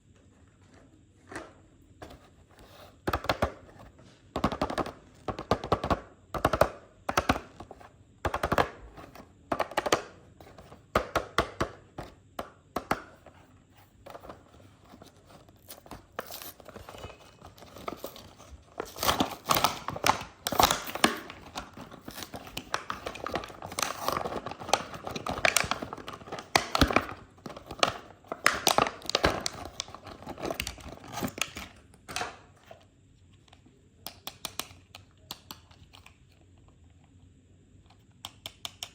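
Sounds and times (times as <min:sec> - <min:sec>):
packaging crinkling and tearing: 0:15.0 - 0:31.8.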